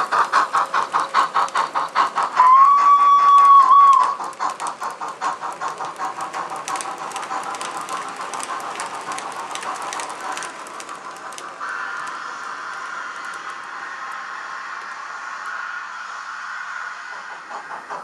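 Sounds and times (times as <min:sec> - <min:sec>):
model steam locomotive chuffing: 0:00.0 - 0:18.0
steady hiss: 0:00.0 - 0:18.0.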